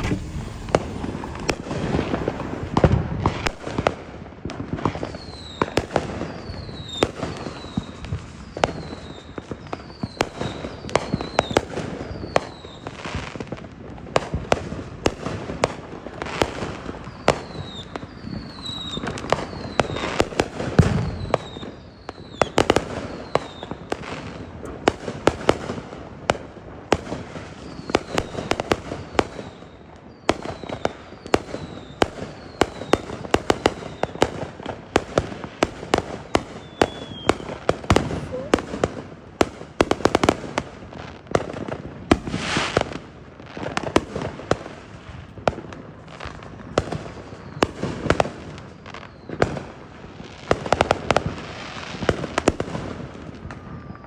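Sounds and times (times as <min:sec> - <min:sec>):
deep firework booms: 0:00.0 - 0:04.9, 0:14.2 - 0:26.0, 0:31.4 - 0:43.0
firework bangs and crackles: 0:00.0 - 0:54.0.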